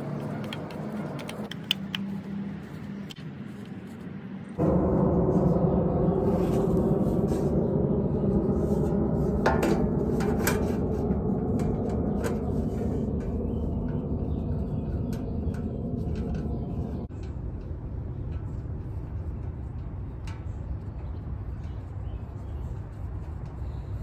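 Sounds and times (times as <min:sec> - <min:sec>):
low background hum: 0:00.0 - 0:24.0.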